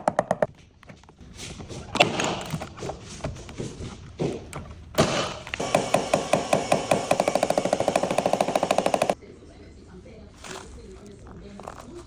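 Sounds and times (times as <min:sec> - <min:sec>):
fast ringing taps: 0:05.6 - 0:09.2.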